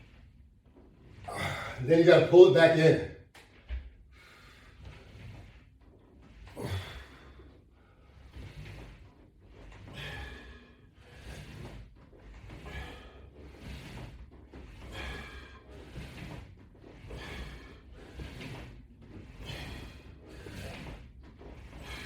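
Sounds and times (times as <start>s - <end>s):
ab roller wheel rolling on floor: 0.0s - 22.0s
heavy breathing: 1.3s - 2.4s, 6.5s - 8.2s, 9.9s - 11.8s, 12.6s - 14.0s, 14.8s - 16.2s, 17.0s - 18.7s, 19.3s - 20.9s.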